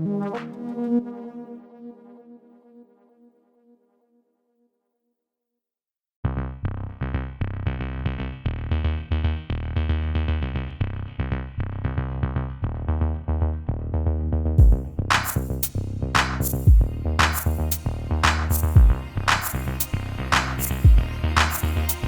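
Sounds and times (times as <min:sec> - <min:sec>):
electronic music with synthesizer: 0:00.0 - 0:03.2, 0:14.6 - 0:22.0
fast drum-machine beat: 0:14.6 - 0:15.5, 0:16.2 - 0:19.7, 0:20.4 - 0:22.0.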